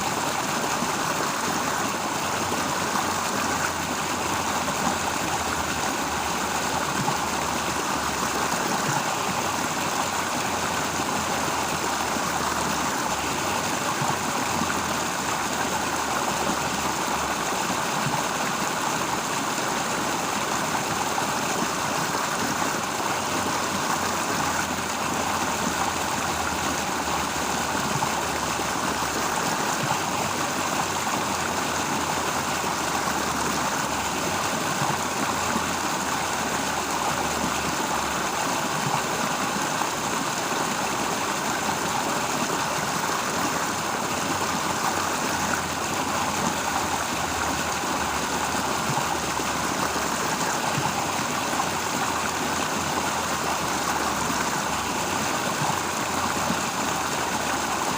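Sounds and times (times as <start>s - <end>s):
stream water rushing: 0.0s - 57.9s.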